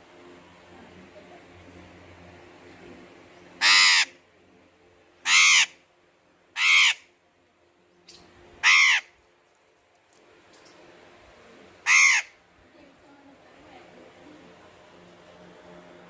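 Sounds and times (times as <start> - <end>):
parrot calling: 3.6 - 4.2, 5.2 - 5.8, 6.5 - 7.1, 8.1 - 9.2, 11.8 - 12.4.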